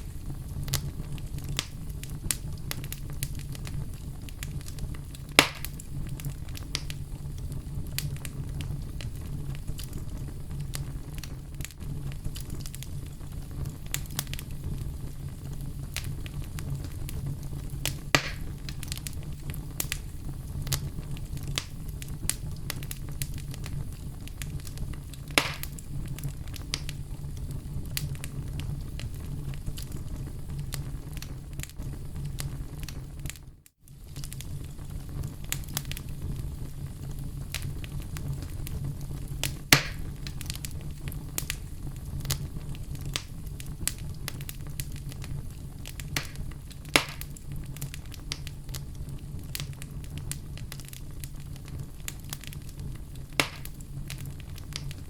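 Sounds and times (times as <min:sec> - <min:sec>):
logs crackling in a fireplace: 0:00.0 - 0:55.0
loud fire pops: 0:00.0 - 0:55.0
low rumble of flame: 0:00.0 - 0:55.0.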